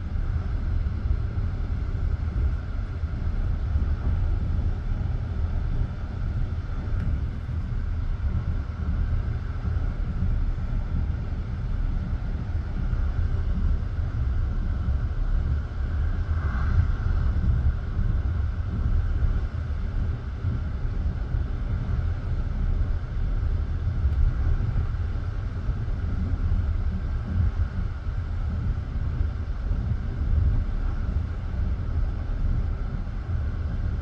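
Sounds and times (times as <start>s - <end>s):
train wheels rumbling on rail: 0.0s - 34.0s.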